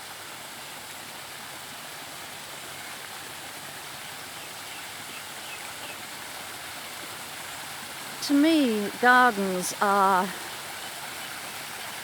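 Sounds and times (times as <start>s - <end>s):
waterfall rushing: 6.2s - 10.8s.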